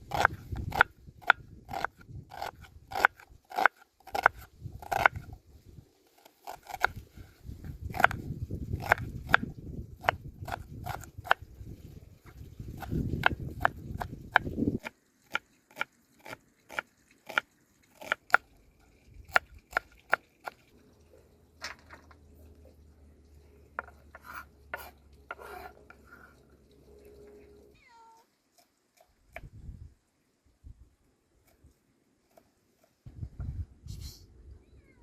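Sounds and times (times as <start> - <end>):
knife chopping on wooden board: 23.8 - 25.7
scrapes of food preparation: 24.2 - 26.4.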